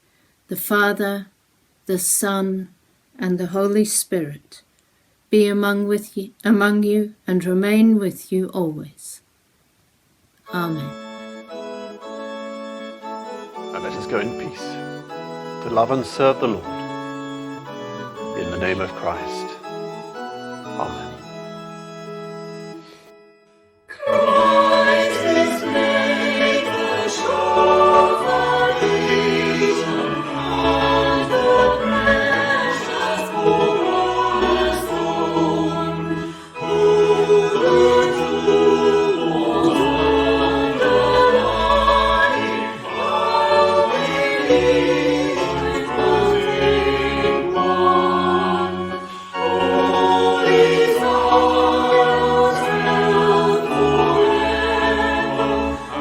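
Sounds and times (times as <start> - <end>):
choir singing a hymn: 10.5 - 23.0, 23.9 - 56.0
low sustained instrumental accompaniment: 10.9 - 56.0.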